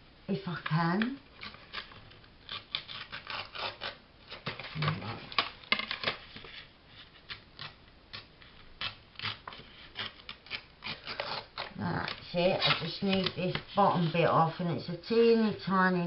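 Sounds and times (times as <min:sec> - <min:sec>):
paper rustling: 0:12.4 - 0:14.4.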